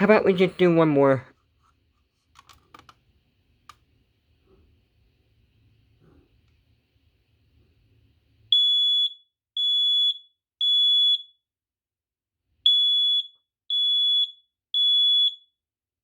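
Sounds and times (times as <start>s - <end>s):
smoke detector beeping: 8.5s - 11.3s.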